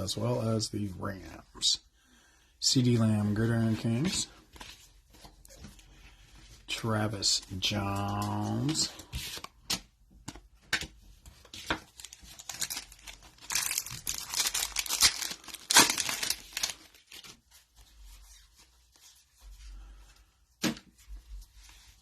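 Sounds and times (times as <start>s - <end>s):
wrapper tearing and crinkling: 11.8s - 17.4s.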